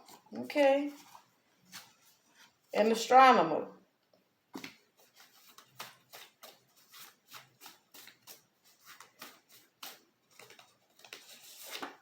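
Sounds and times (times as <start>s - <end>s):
cards flicking and rustling: 4.6s - 12.0s.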